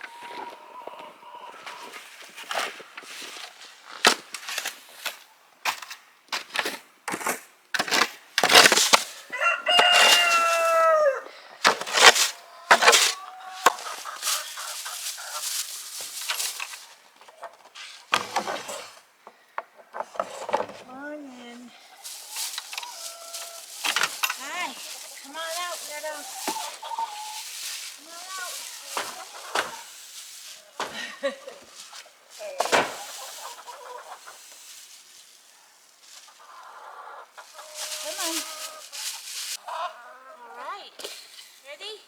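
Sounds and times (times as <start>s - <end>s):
short sharp knocks and crunches: 5.7s - 10.4s, 11.6s - 16.8s, 22.4s - 26.8s, 27.6s - 29.9s
rooster crowing: 9.3s - 11.4s, 22.0s - 25.4s.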